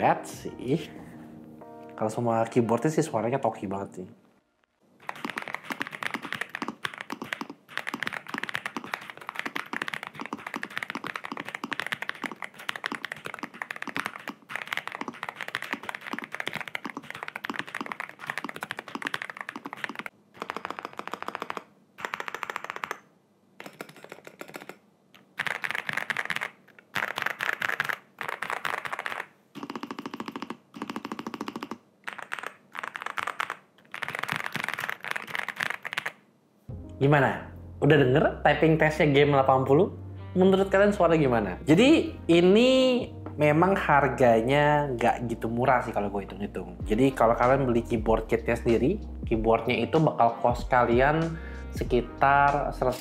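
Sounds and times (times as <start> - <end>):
mechanical keyboard typing: 5.0 - 36.2.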